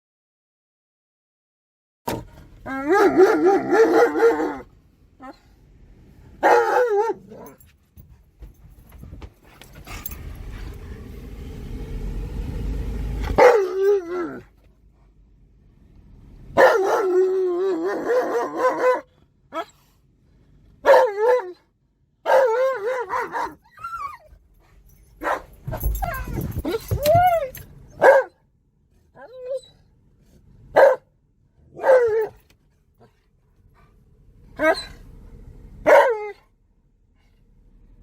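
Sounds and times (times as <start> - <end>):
dog howling and whining: 2.6 - 5.5, 12.6 - 14.5, 16.6 - 19.7, 20.9 - 21.6, 22.2 - 24.4, 25.2 - 28.3, 29.2 - 29.8, 31.8 - 32.4, 34.6 - 35.1, 35.8 - 36.4
low rumble: 7.5 - 16.6, 24.3 - 28.0.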